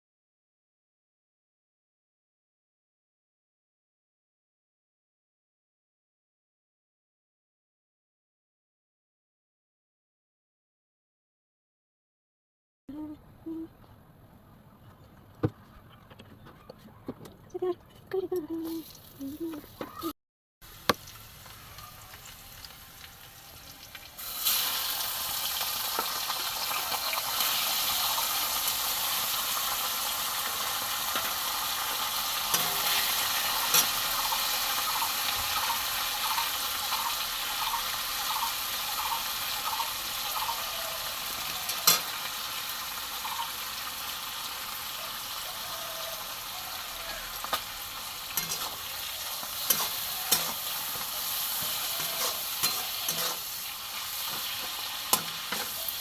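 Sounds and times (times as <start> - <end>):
food sizzling in hot oil: 20.6 - 56.0.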